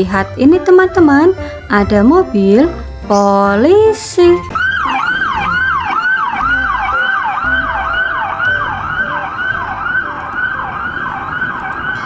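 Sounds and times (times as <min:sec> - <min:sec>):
toy siren wailing: 0:04.5 - 0:12.0.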